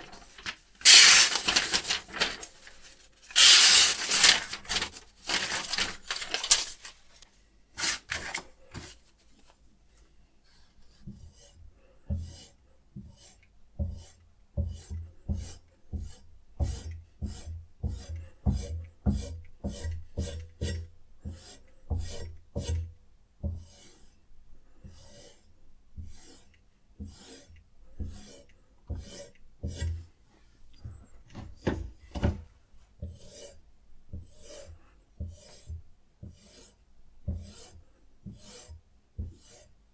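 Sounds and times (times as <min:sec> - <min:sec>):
sharpening stone rasping on knife: 0:28.2 - 0:29.4, 0:36.4 - 0:36.8, 0:38.4 - 0:38.7, 0:39.4 - 0:39.7.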